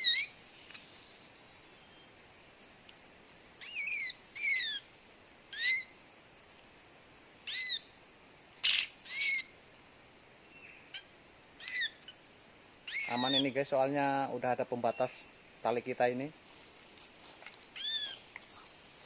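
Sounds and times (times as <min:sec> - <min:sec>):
bird calling: 0:00.0 - 0:01.0, 0:03.6 - 0:04.9, 0:05.5 - 0:06.0, 0:07.4 - 0:07.9, 0:08.6 - 0:09.6, 0:10.5 - 0:12.2, 0:12.8 - 0:13.7, 0:14.7 - 0:16.2, 0:17.7 - 0:18.8.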